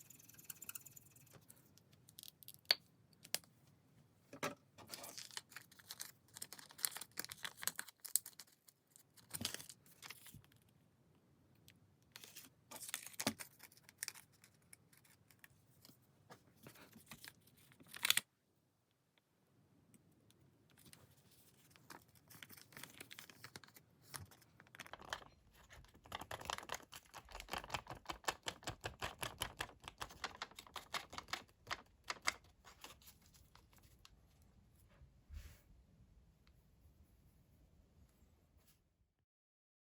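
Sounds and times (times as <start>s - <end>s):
paper being folded and creased: 5.0s - 8.6s, 20.8s - 34.0s.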